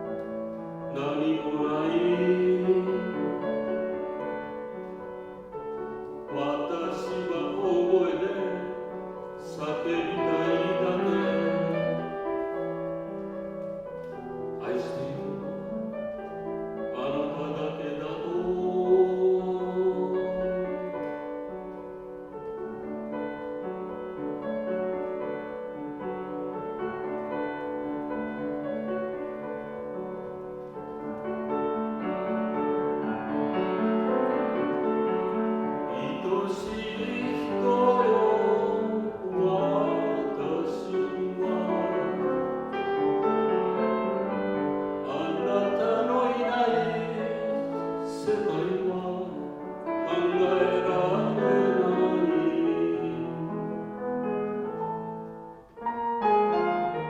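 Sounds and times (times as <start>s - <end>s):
piano accompaniment: 0.0s - 57.0s
man singing operatically: 0.9s - 3.8s, 6.2s - 12.2s, 14.6s - 15.7s, 16.9s - 20.9s, 35.9s - 42.5s, 45.0s - 54.0s.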